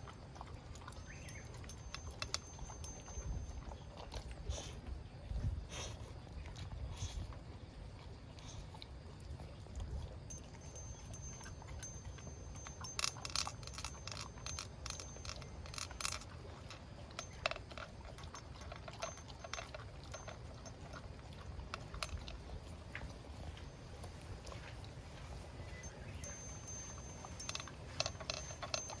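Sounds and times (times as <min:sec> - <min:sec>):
pet crunching food: 0:08.0 - 0:29.0.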